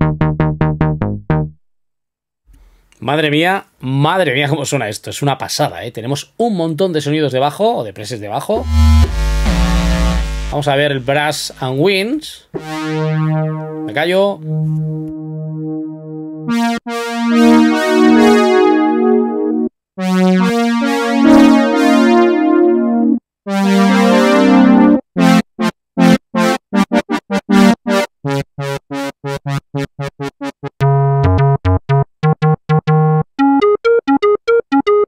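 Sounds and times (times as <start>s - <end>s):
staccato synthesizer notes: 8.6s - 11.8s, 12.6s - 15.1s, 25.2s - 34.2s
synthesizer brass chords: 8.6s - 11.9s, 12.5s - 33.6s.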